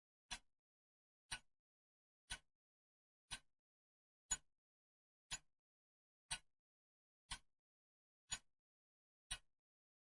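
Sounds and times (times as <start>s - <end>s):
clock ticking: 0.3s - 0.5s, 1.3s - 1.5s, 2.3s - 2.5s, 3.3s - 3.5s, 4.3s - 4.5s, 6.3s - 6.5s, 7.3s - 7.5s, 8.3s - 8.5s, 9.3s - 9.5s.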